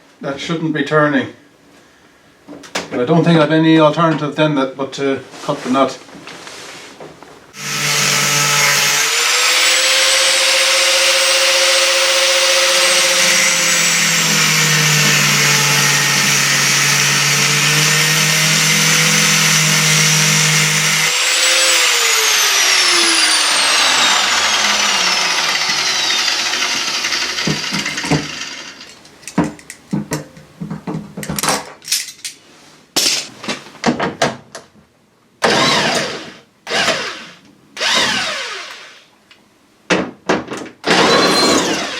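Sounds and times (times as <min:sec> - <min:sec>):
grinder winding down whine: 0:07.6 - 0:28.8, 0:35.5 - 0:39.0, 0:40.9 - 0:41.9
angle grinder cutting metal: 0:07.6 - 0:28.9, 0:35.5 - 0:39.0, 0:40.9 - 0:41.9
tools and metal clattering: 0:27.5 - 0:32.4.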